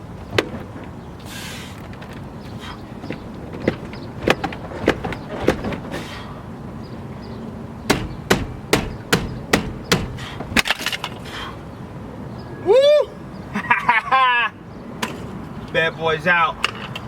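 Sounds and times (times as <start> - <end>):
knocks on steering wheel: 7.9 - 10.2.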